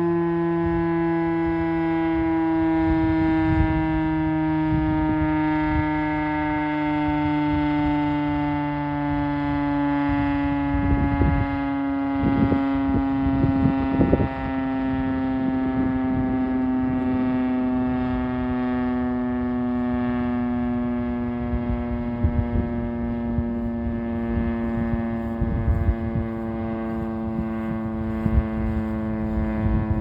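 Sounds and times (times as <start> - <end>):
siren steady falling tone: 0.0 - 30.0.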